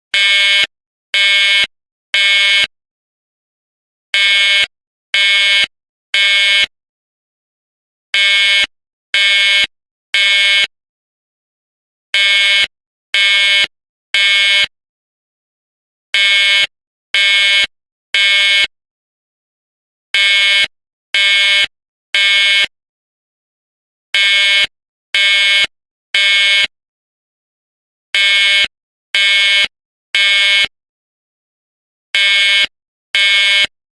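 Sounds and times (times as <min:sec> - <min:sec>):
fire alarm horn blasts: 0:00.1 - 0:02.7, 0:04.2 - 0:06.7, 0:08.2 - 0:10.7, 0:12.2 - 0:14.7, 0:16.2 - 0:18.7, 0:20.2 - 0:22.7, 0:24.2 - 0:26.7, 0:28.2 - 0:30.7, 0:32.2 - 0:33.7.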